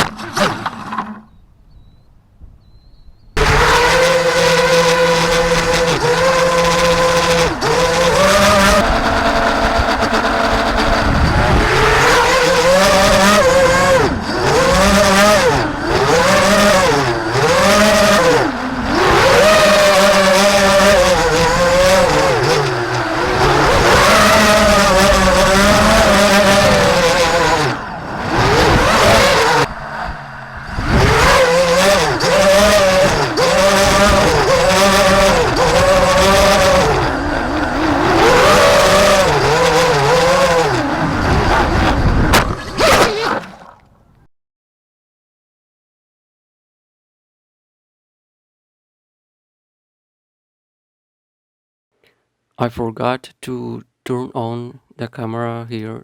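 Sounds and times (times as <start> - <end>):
quadcopter motors whining: 2.7 - 43.7.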